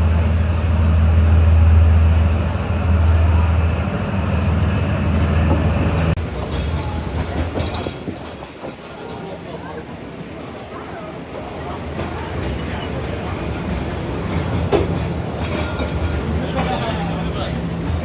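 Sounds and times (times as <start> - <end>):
diesel train engine drone: 0.0 - 8.2, 9.3 - 18.0
train wheels clattering on rails: 5.4 - 9.8, 11.4 - 18.0.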